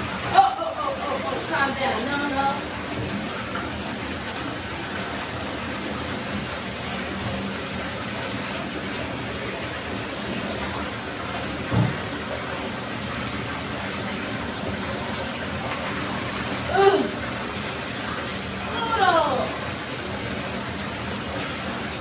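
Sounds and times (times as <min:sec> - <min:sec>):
bath water pouring and splashing: 0:00.0 - 0:22.0
low thump: 0:11.7 - 0:12.0.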